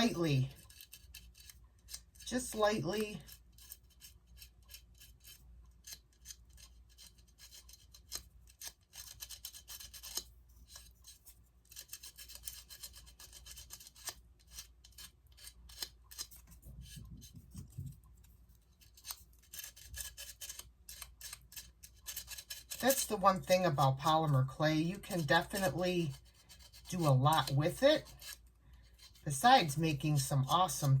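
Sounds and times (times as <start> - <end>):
hand sanding scratching strokes: 18.8 - 31.0.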